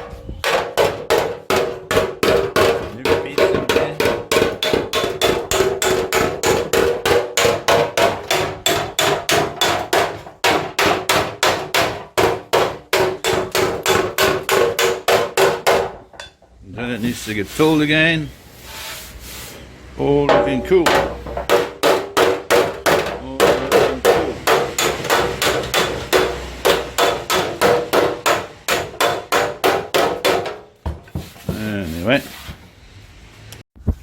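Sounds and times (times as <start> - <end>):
hammer striking ringing steel panel: 0.0 - 16.4, 20.2 - 30.7.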